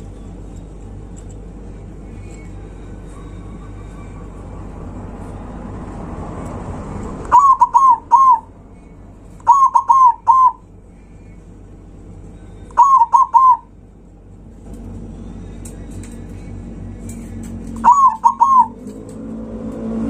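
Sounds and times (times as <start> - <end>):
low steady rumble: 0.0 - 20.0
dove cooing: 7.3 - 8.5, 9.4 - 10.7, 12.7 - 13.7, 17.7 - 19.0.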